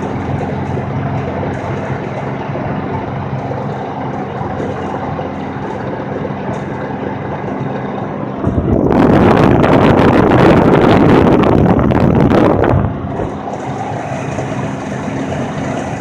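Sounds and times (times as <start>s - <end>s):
vehicle engine running: 0.0s - 16.0s
wind noise on microphone: 0.0s - 16.0s.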